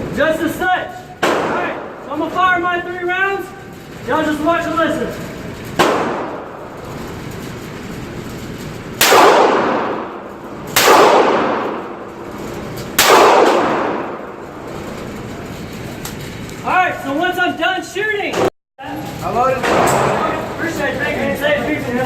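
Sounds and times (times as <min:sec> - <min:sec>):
handgun shots with echo: 0:01.2 - 0:02.0, 0:05.8 - 0:06.5, 0:09.0 - 0:12.0, 0:12.9 - 0:14.3.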